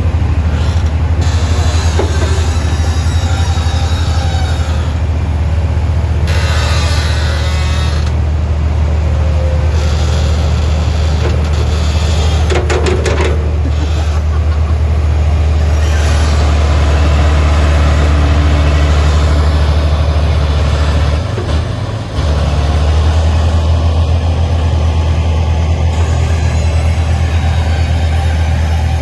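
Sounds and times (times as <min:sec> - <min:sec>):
heavy diesel engine under load: 0:00.0 - 0:29.0
metallic clattering knocks: 0:10.3 - 0:15.4.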